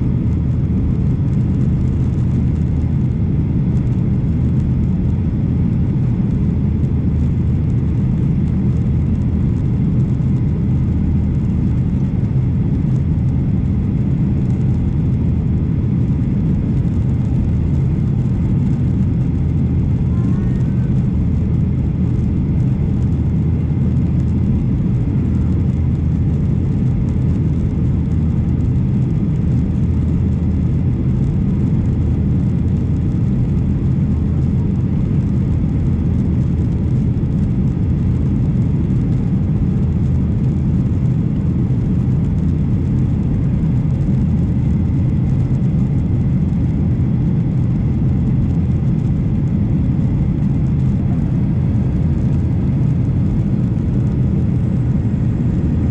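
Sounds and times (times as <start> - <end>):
jet engines and airflow: 0.0 - 55.9.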